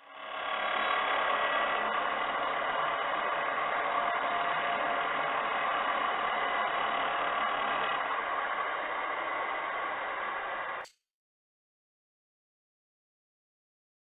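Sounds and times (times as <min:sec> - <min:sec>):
angle grinder cutting metal: 0:00.0 - 0:10.9.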